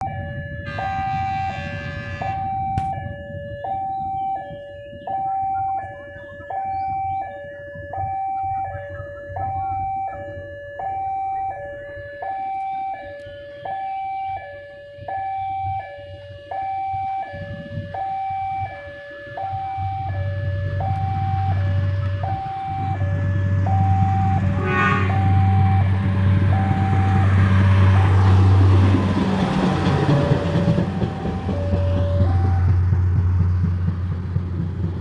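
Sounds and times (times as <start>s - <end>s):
level crossing alarm two-note tone: 0.0s - 28.7s, 29.4s - 33.4s
idling vehicle engines rumble: 0.0s - 35.0s
loud horn blast: 0.6s - 2.9s, 18.8s - 33.0s.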